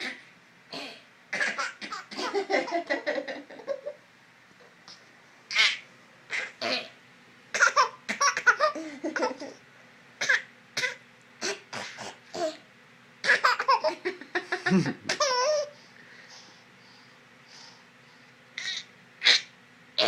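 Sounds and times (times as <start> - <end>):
child fake-coughing: 0.0 - 2.4, 5.6 - 8.7, 10.2 - 12.6
child giggling: 2.0 - 4.0, 7.8 - 9.6, 13.3 - 15.8.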